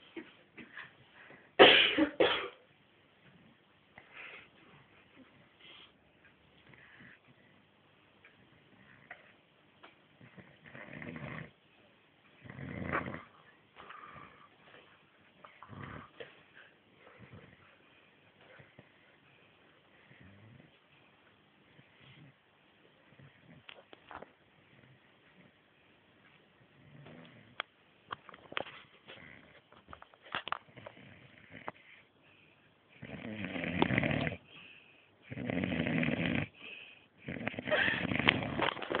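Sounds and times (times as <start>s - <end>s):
loud snores: 10.2s - 11.5s, 12.4s - 13.3s, 33.0s - 34.4s, 35.2s - 36.6s, 37.2s - 38.6s.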